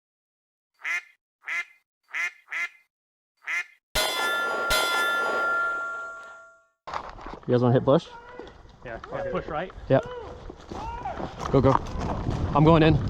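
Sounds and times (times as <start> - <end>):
duck quacking: 0.8 - 3.8
metallic clang ringing: 4.0 - 6.6.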